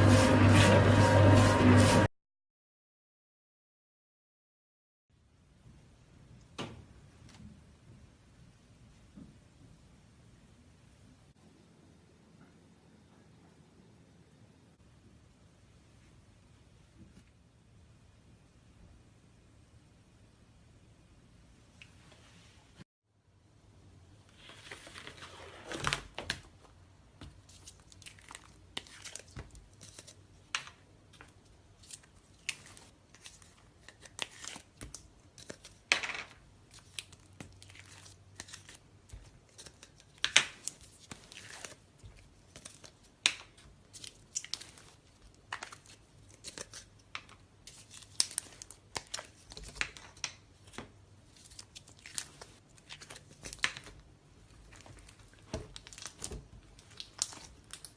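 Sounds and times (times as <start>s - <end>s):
slime crackling and popping: 54.6s - 57.9s.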